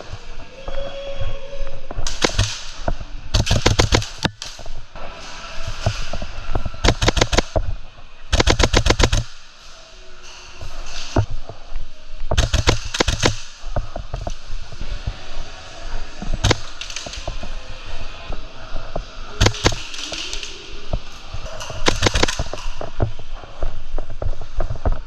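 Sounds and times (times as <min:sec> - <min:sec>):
airsoft rifle firing bursts: 0:02.1 - 0:02.8, 0:03.4 - 0:04.4, 0:06.8 - 0:07.6, 0:08.3 - 0:09.4, 0:12.4 - 0:13.5, 0:16.4 - 0:17.2, 0:19.4 - 0:20.1, 0:21.8 - 0:22.6.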